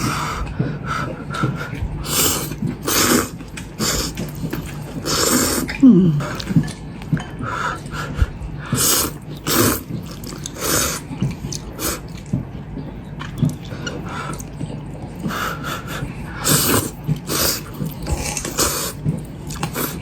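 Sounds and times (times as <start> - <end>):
person slurping noodles: 2.0 - 6.6, 8.7 - 12.2, 15.5 - 20.0.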